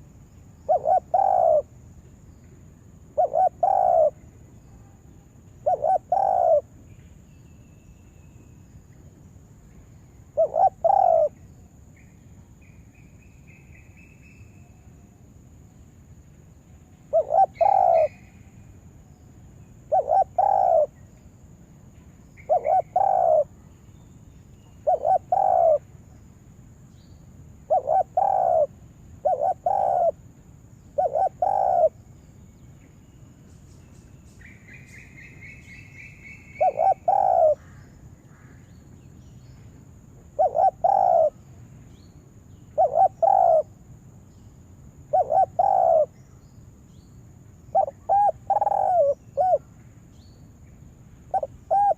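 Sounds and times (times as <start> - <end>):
dove cooing: 0.7 - 1.7, 3.1 - 4.2, 5.6 - 6.7, 10.3 - 11.4, 17.1 - 18.2, 19.9 - 20.9, 22.4 - 23.5, 24.8 - 25.8, 27.7 - 30.2, 31.0 - 32.0, 36.6 - 37.7, 40.3 - 41.4, 42.8 - 43.7, 45.1 - 46.2, 47.7 - 49.7, 51.3 - 51.9.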